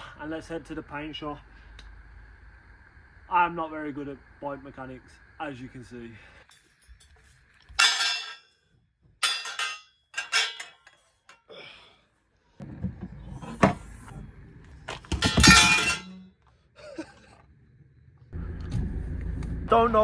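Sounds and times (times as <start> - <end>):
metal bike parts clinking: 6.4 - 8.6, 9.2 - 11.5, 14.9 - 16.3
low rumble: 17.7 - 20.0.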